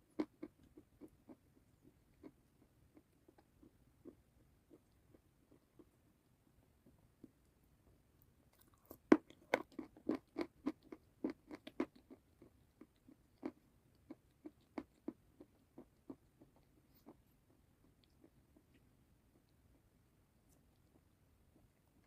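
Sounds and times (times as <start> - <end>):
bite into crunchy food: 8.5 - 12.2
crisp chewing crunches: 8.5 - 17.2.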